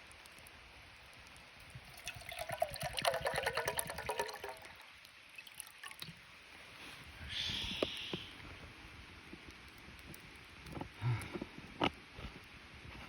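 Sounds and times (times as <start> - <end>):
water pouring into container: 1.7 - 6.2.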